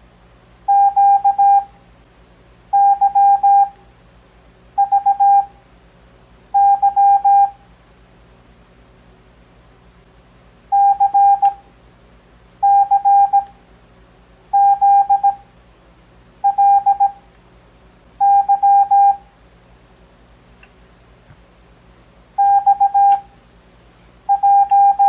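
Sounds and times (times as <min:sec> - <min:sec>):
morse code beeps: 0:00.7 - 0:01.7, 0:02.8 - 0:03.8, 0:04.8 - 0:05.5, 0:06.6 - 0:07.6, 0:10.7 - 0:11.6, 0:12.6 - 0:13.5, 0:14.6 - 0:15.4, 0:16.4 - 0:17.2, 0:18.2 - 0:19.2, 0:22.4 - 0:23.3, 0:24.3 - 0:25.0.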